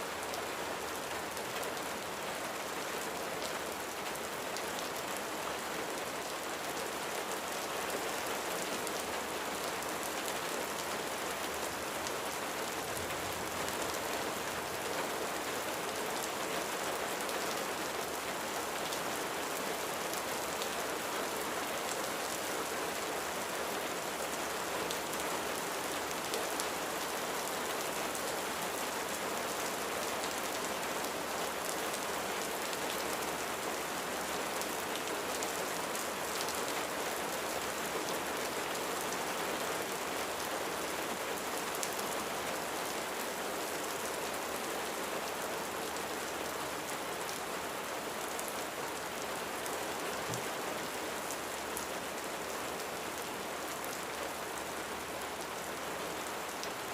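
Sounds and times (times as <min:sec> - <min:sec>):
steady rain falling: 0:00.0 - 0:56.9.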